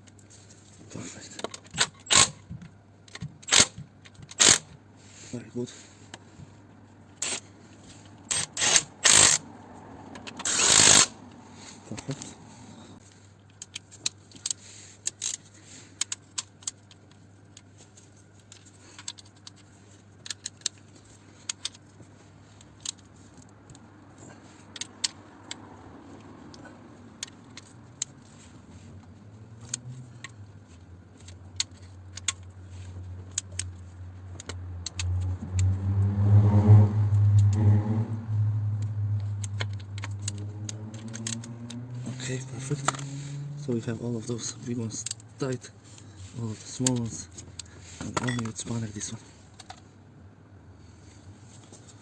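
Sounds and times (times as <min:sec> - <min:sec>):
spanner and ratchet clicking: 0:01.7 - 0:02.4, 0:03.1 - 0:04.8, 0:07.2 - 0:09.5, 0:10.1 - 0:11.2, 0:31.2 - 0:36.1, 0:37.1 - 0:45.3
low hum: 0:35.2 - 0:40.9.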